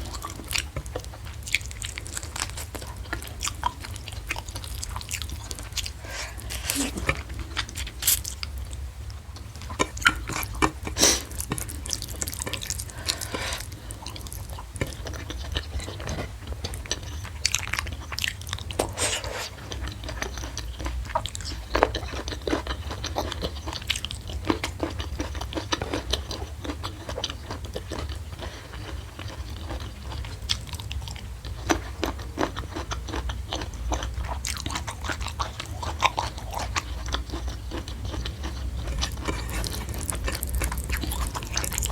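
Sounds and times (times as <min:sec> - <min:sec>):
steady low hum: 0:00.0 - 0:22.1, 0:28.1 - 0:41.9
chewing crunchy food: 0:00.0 - 0:41.9
wet mouth sounds: 0:35.1 - 0:41.9.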